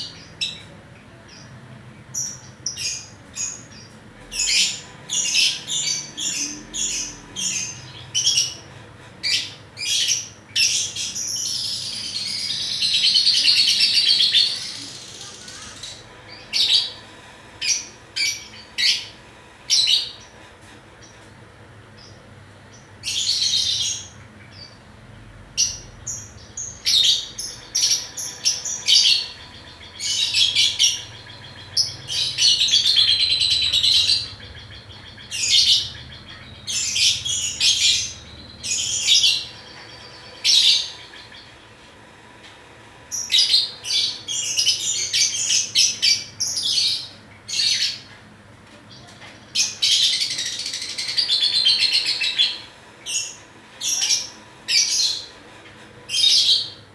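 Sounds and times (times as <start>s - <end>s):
lovebird twittering: 25.6s - 41.6s.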